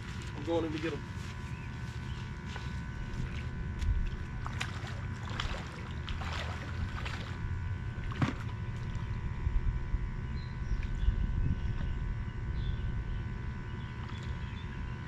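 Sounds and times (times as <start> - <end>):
water splashing from wading: 2.5 - 9.2
low rumble: 2.9 - 15.0.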